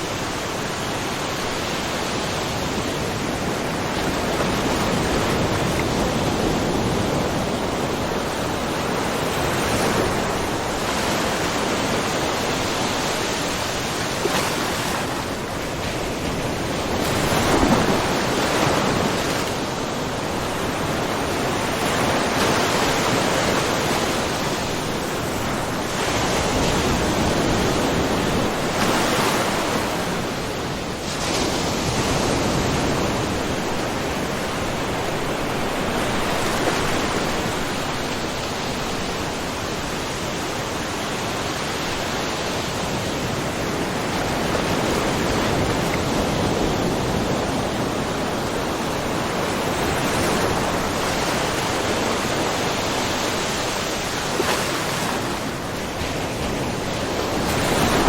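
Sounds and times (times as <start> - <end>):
waves washing over rocky shore: 0.0 - 58.0.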